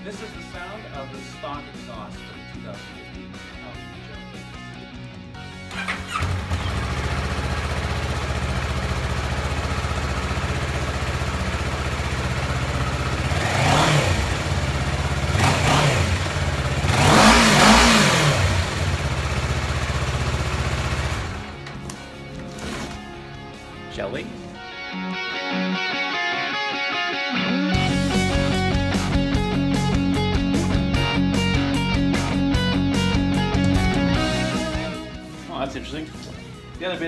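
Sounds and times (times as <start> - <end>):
motorcycle engine idling and revving: 4.3 - 23.3, 27.8 - 35.4.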